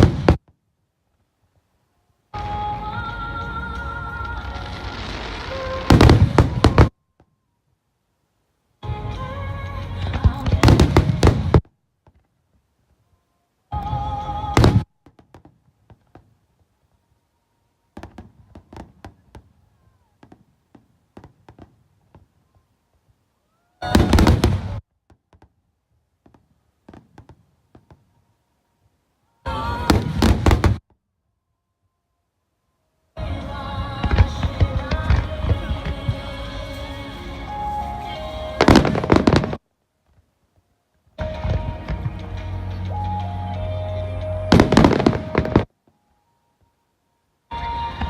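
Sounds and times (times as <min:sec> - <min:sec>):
fireworks bursting: 0:00.0 - 0:01.2, 0:02.3 - 0:07.4, 0:08.8 - 0:12.4, 0:13.7 - 0:16.6, 0:17.9 - 0:22.7, 0:23.8 - 0:25.6, 0:26.2 - 0:28.2, 0:29.5 - 0:31.0, 0:33.2 - 0:40.2, 0:41.1 - 0:45.7, 0:47.5 - 0:48.0
music over loudspeakers: 0:08.8 - 0:11.6, 0:33.2 - 0:39.5, 0:41.2 - 0:45.7, 0:47.5 - 0:48.0.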